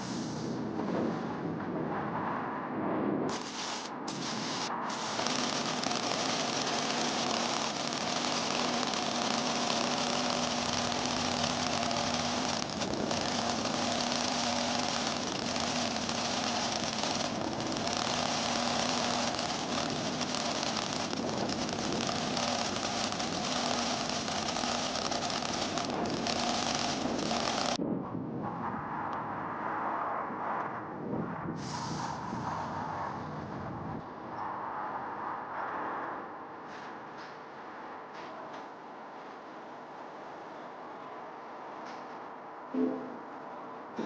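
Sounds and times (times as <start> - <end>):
spray gun hissing: 3.3 - 27.8.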